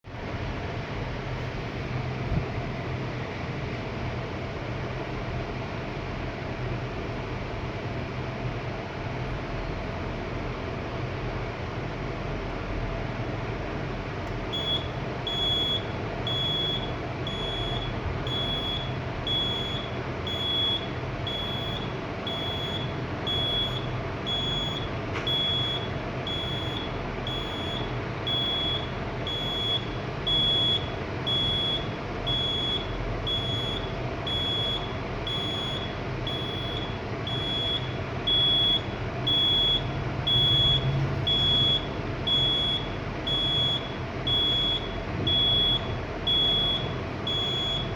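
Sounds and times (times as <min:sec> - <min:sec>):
low background hum: 0:00.1 - 0:47.9
fire alarm beeping: 0:14.5 - 0:47.9.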